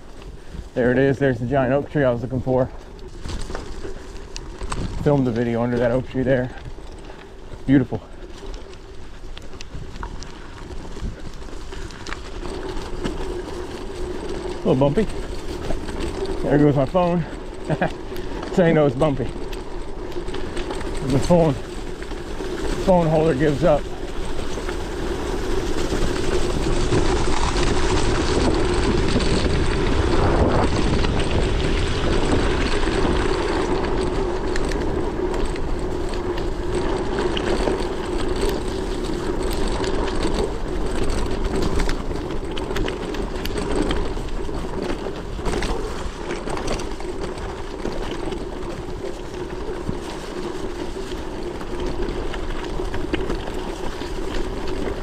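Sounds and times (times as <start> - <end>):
wind rushing over microphone: 0.0 - 6.8, 20.4 - 47.1
tyres rumbling on gravel: 0.0 - 55.0.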